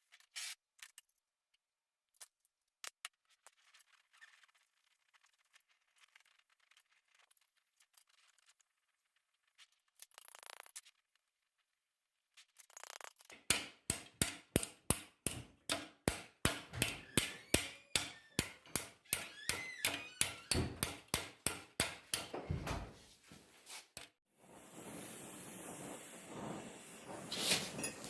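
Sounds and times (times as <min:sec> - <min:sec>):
hammer striking steel: 0:13.4 - 0:22.4.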